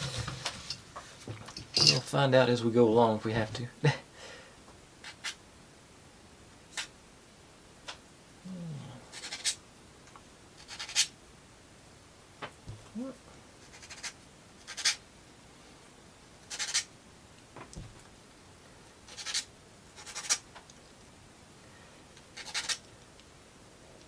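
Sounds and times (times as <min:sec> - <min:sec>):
plywood pieces scraping together: 0:00.0 - 0:02.1.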